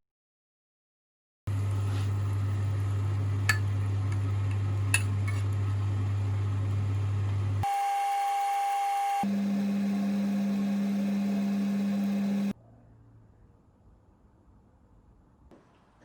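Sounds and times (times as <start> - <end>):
higher steady hum: 1.5 - 12.5
electrical hum: 1.5 - 12.6.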